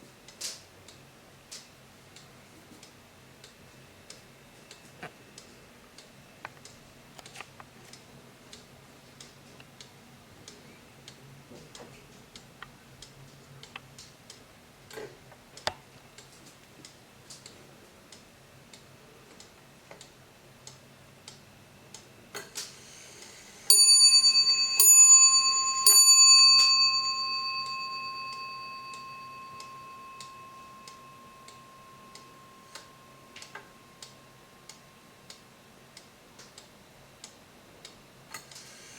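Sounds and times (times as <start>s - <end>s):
wall clock ticking: 0.3s - 22.2s, 23.7s - 38.6s
clock striking brass bell: 23.7s - 34.4s.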